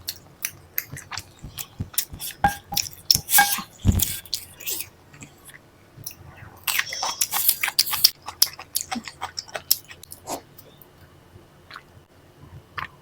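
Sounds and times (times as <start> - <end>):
close chewing clicks and smacks: 0.0 - 2.3, 6.0 - 10.8.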